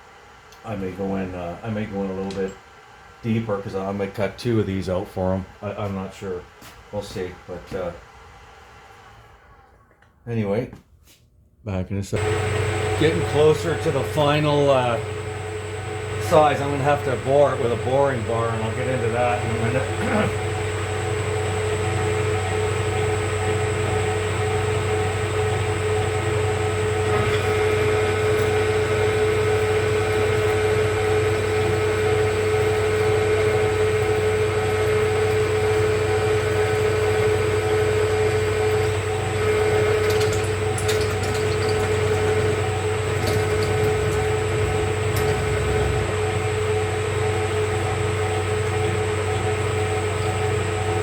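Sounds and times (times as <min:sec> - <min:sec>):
metal lathe running: 0:12.2 - 0:51.0.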